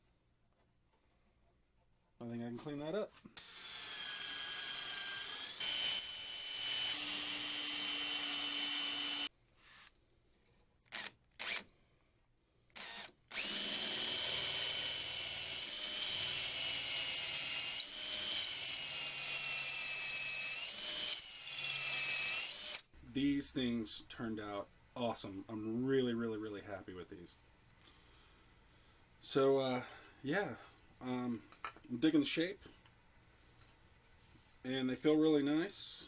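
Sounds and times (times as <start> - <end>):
electric power tool whining: 3.4 - 9.3.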